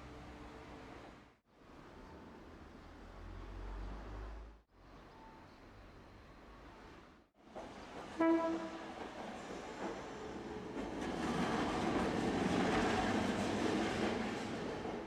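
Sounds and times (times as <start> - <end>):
train wheels rumbling on rails: 7.4 - 15.0
train horn blast: 8.2 - 8.9.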